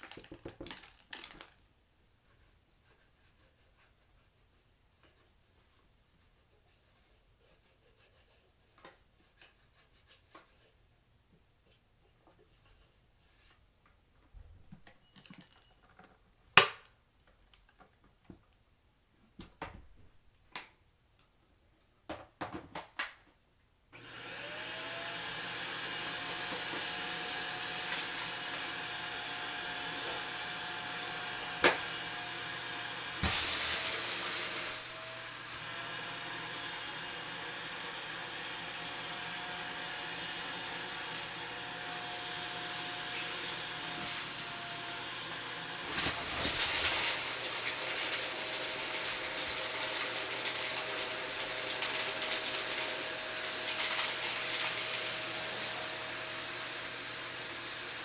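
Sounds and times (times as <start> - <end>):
vacuum cleaner motor whining: 24.0 - 58.0.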